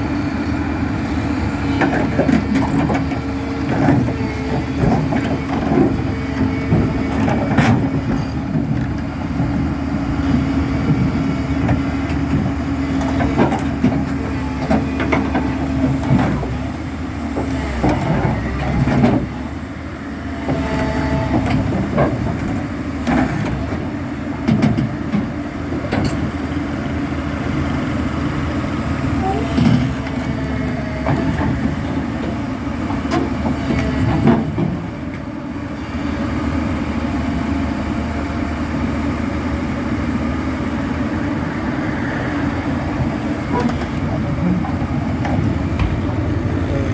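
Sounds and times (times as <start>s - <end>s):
excavator diesel engine running: 0.0s - 46.9s
machine clanks and knocks: 43.5s - 46.9s.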